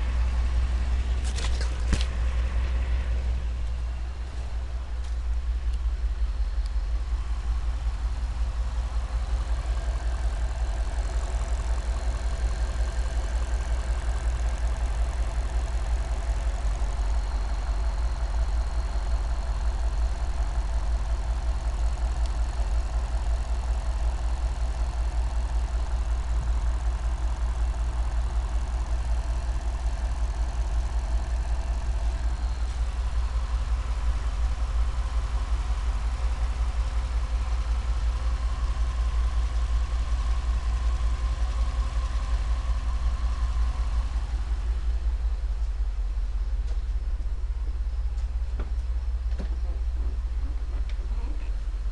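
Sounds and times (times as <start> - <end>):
car engine idling with misfire: 0.0 - 51.9.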